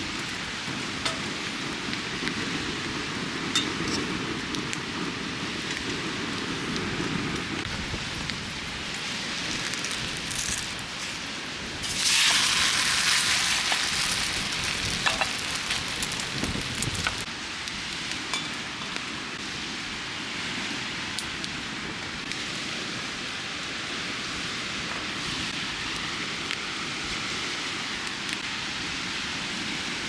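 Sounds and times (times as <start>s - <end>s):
crackles: 0.0s - 19.4s
food sizzling in a hot pan: 9.5s - 17.3s.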